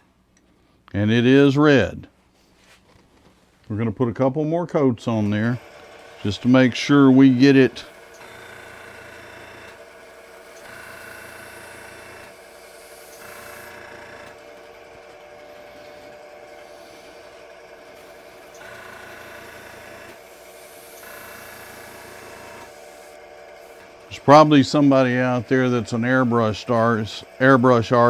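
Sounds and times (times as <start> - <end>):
wood lathe running: 5.0 - 28.0
airbrush spraying hiss: 11.0 - 13.8, 15.5 - 17.4, 18.0 - 23.8.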